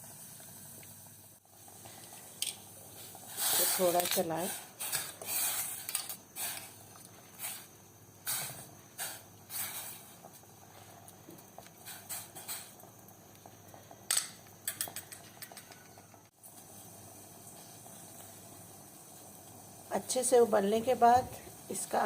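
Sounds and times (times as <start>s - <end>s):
faint hiss: 0.0s - 15.0s, 16.3s - 22.0s
metal clicking on a pot: 14.1s - 16.0s.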